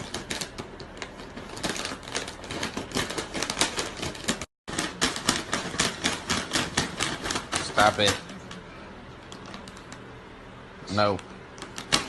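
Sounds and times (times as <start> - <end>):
rapid sharp clicking and tapping: 1.7 - 8.2.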